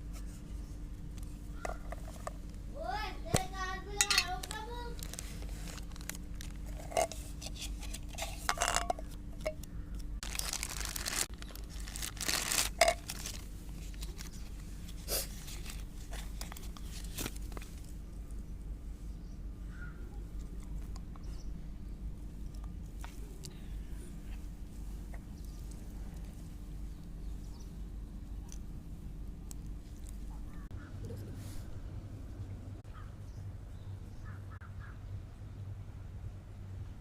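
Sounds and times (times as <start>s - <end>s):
faint steady hum: 0.0s - 37.0s
packaging crinkling and tearing: 4.3s - 8.8s, 10.2s - 17.9s.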